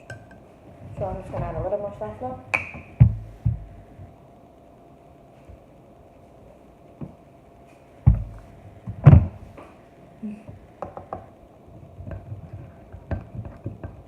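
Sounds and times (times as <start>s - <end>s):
heavy thumps: 2.6s - 4.1s, 8.0s - 9.7s.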